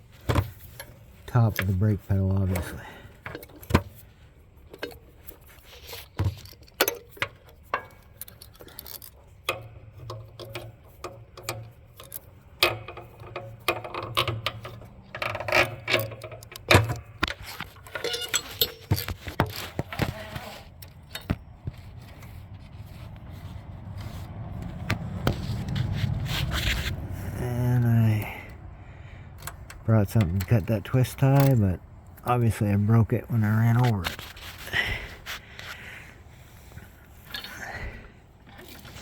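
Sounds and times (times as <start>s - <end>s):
control cable clicks and rattles: 0.2s - 4.0s, 4.6s - 27.0s, 29.3s - 32.5s.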